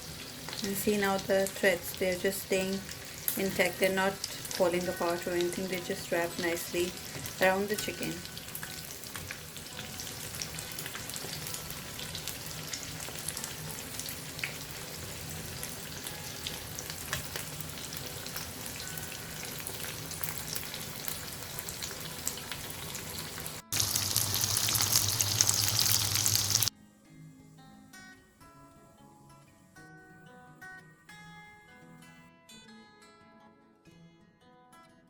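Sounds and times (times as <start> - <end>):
food sizzling in hot oil: 0.0 - 26.7.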